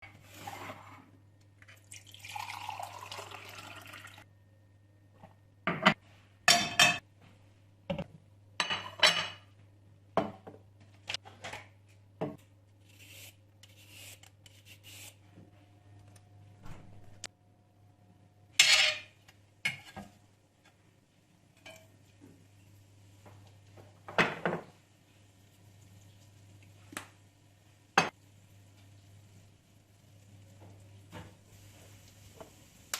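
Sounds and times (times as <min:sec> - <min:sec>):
running water: 0:01.8 - 0:04.2
dishes and cutlery clinking: 0:05.7 - 0:07.0, 0:08.6 - 0:09.5, 0:18.6 - 0:20.1, 0:21.6 - 0:21.9.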